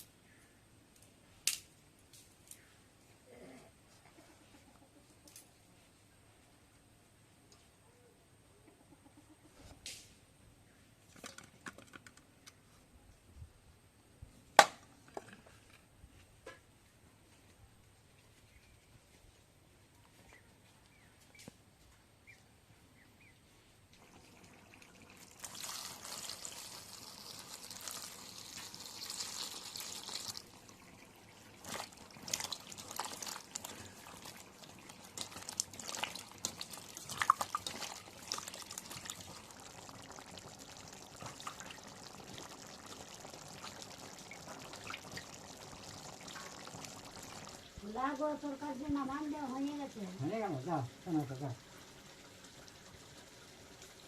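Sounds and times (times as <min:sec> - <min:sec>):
liquid pouring into pot: 0:24.0 - 0:47.7.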